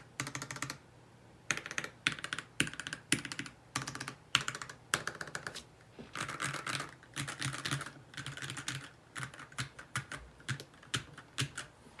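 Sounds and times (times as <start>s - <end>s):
mechanical keyboard typing: 0.0s - 0.8s, 1.5s - 5.6s, 6.2s - 11.7s.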